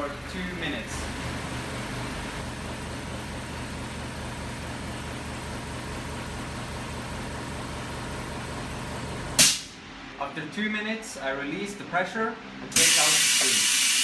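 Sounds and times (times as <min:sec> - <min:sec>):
hiss: 0:12.8 - 0:14.0.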